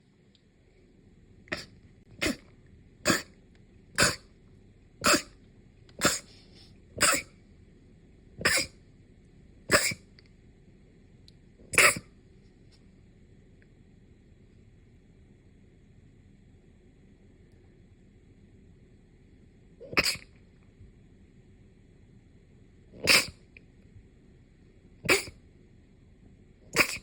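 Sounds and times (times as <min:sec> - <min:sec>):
person sneezing: 0:01.5 - 0:03.3, 0:04.0 - 0:04.2, 0:05.0 - 0:05.3, 0:06.0 - 0:07.4, 0:08.4 - 0:08.8, 0:09.7 - 0:10.0, 0:11.7 - 0:12.1, 0:19.8 - 0:20.3, 0:23.0 - 0:23.4, 0:25.1 - 0:25.4, 0:26.7 - 0:27.0.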